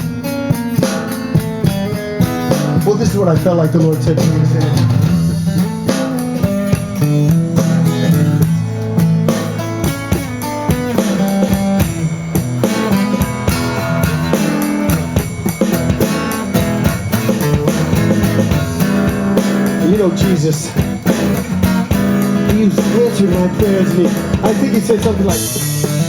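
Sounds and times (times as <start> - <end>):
blues guitar lines: 0.0 - 26.0
drum kit beat: 0.0 - 26.0.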